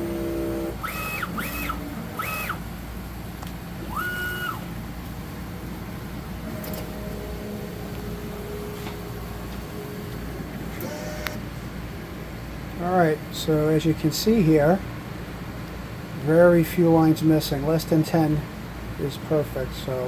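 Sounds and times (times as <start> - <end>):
printer motor whines: 0.0 - 4.9, 6.4 - 11.4
faint steady hum: 0.0 - 20.0.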